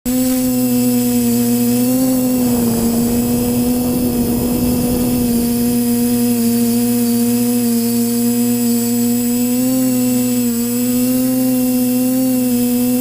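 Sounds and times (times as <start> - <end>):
drone propellers humming: 0.6 - 8.8.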